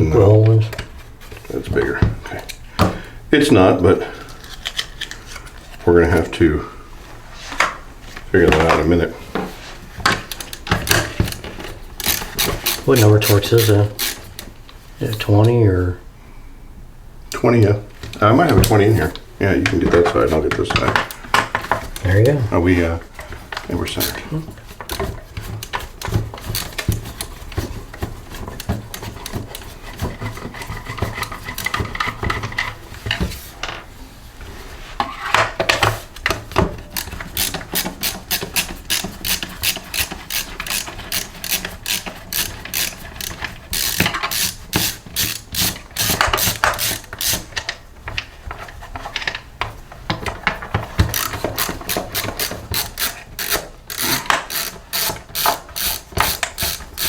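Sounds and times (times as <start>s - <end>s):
hand ratchet clicking: 10.3s - 14.5s, 23.6s - 27.6s, 36.2s - 47.8s, 51.0s - 57.0s.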